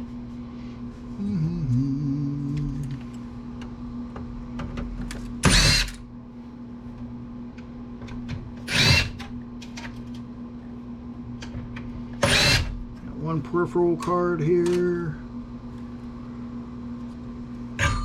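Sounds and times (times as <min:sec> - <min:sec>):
steady low hum: 0:00.0 - 0:18.0
cordless drill spinning: 0:05.5 - 0:05.9, 0:12.3 - 0:12.7.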